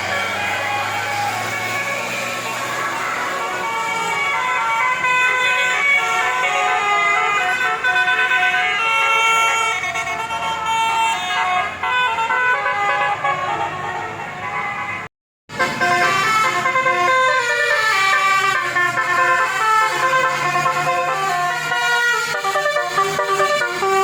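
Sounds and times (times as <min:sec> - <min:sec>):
multi-tone horn playing melody: 0:00.0 - 0:24.0.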